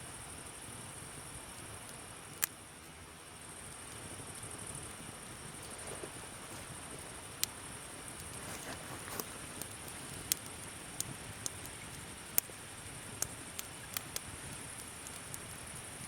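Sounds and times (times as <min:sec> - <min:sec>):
campfire burning: 0:00.0 - 0:16.0
night insects chirring: 0:00.0 - 0:16.0
wood popping in fire: 0:01.8 - 0:03.0, 0:03.6 - 0:16.0.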